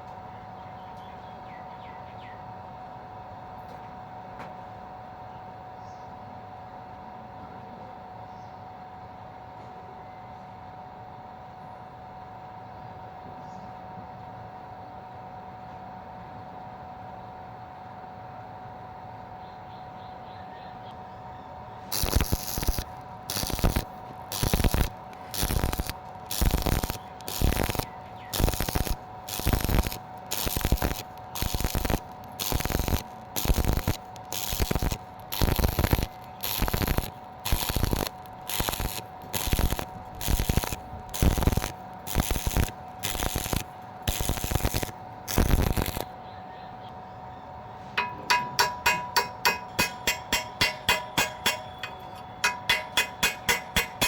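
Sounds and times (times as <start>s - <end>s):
faint steady whine: 0.0s - 54.0s
welding arc crackling: 21.9s - 46.2s, 48.0s - 54.0s.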